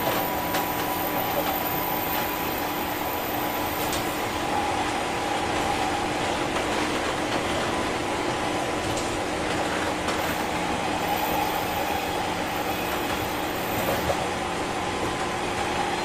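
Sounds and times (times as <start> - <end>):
train interior rolling roar: 0.0 - 16.0.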